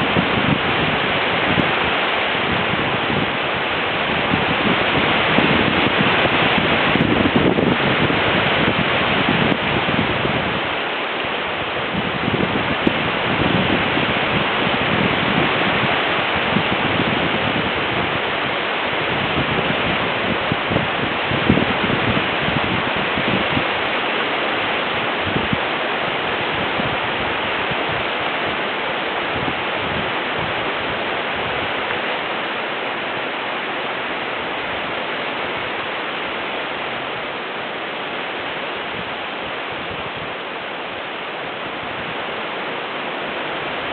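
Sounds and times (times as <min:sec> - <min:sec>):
wind rustling leaves: 0:00.0 - 0:43.9.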